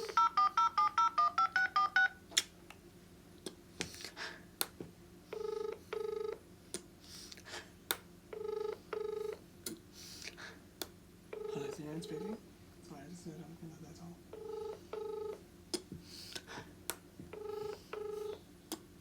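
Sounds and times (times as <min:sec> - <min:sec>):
touch-tone beeps: 0:11.4 - 0:12.4, 0:14.4 - 0:15.4, 0:17.4 - 0:18.4.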